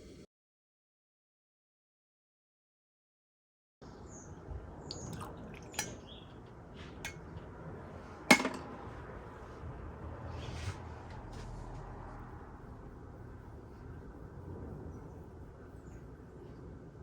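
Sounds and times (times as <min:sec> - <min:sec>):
cups and glassware clinking: 0:04.9 - 0:06.0, 0:08.3 - 0:08.7.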